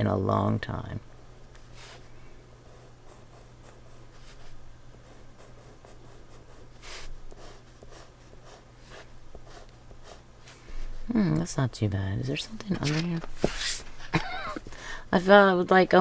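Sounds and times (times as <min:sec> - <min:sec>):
pencil scratching on paper: 0:02.6 - 0:10.3.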